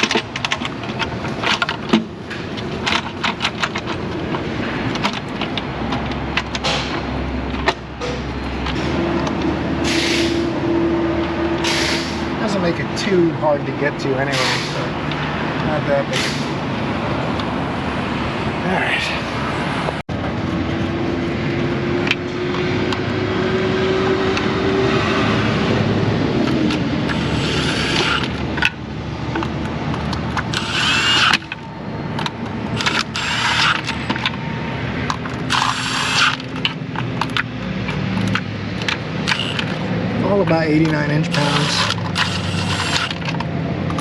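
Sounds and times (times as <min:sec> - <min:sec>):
repair shop background noise: 0:00.0 - 0:44.0
power tool whirring: 0:26.7 - 0:28.4, 0:30.4 - 0:31.6, 0:32.7 - 0:34.2, 0:35.4 - 0:36.7, 0:38.2 - 0:40.0, 0:41.2 - 0:44.0.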